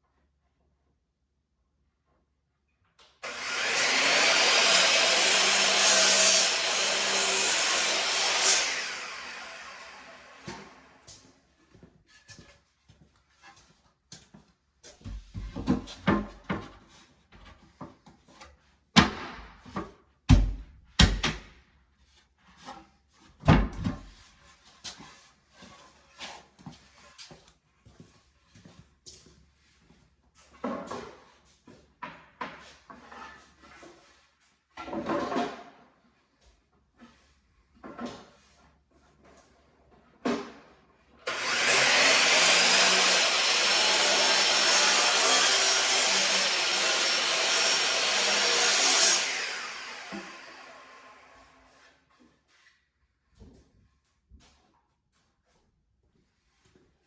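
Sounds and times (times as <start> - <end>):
power tool motor running: 3.2 - 10.9, 41.3 - 51.4.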